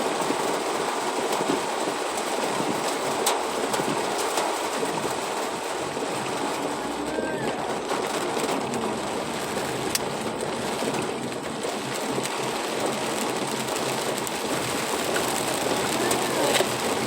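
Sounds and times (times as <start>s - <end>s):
steady rain: 0.0s - 17.0s
car driving: 5.7s - 17.0s.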